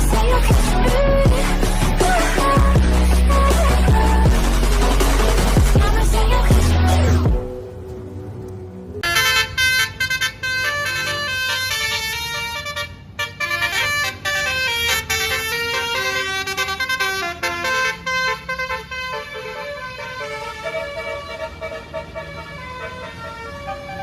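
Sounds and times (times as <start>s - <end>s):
bus air horn melody: 9.0s - 24.0s.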